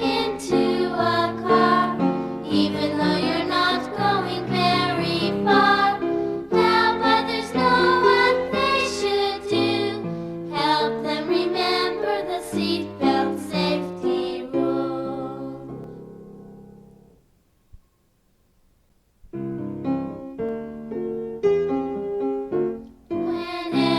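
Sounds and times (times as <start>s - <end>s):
children's song music: 0.0s - 16.9s, 22.4s - 23.9s.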